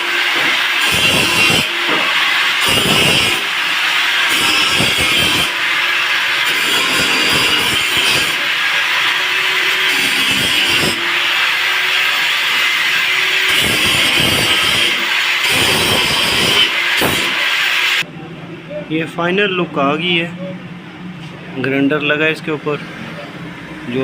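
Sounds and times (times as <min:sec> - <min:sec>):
angle grinder grinding steel: 0:00.0 - 0:18.0.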